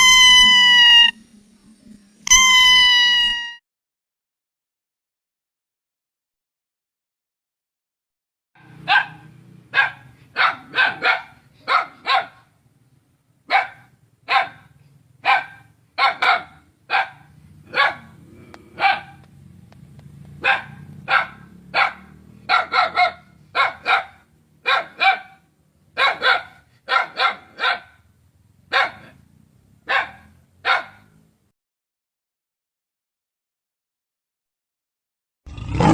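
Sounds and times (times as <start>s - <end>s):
dog barking: 8.6s - 12.5s, 13.5s - 19.3s, 20.4s - 28.1s, 28.7s - 31.2s.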